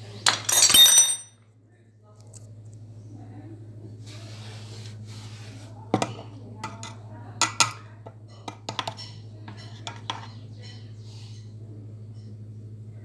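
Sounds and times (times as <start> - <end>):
low electrical hum: 0.0 - 13.0
metal parts and tools clinking: 0.3 - 1.3
sharp metal clanks: 0.5 - 1.3.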